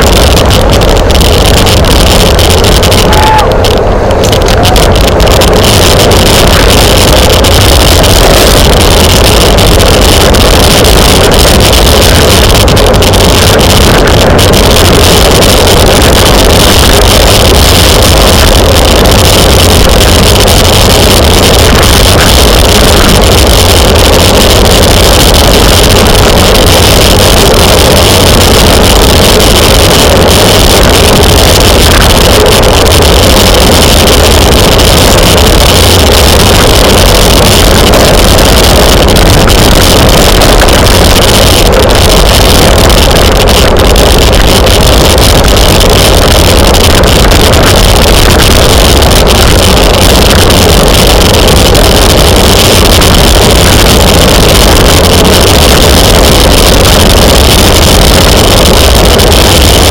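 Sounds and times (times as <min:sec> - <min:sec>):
wind roar on microphone: 0:00.0 - 0:59.9.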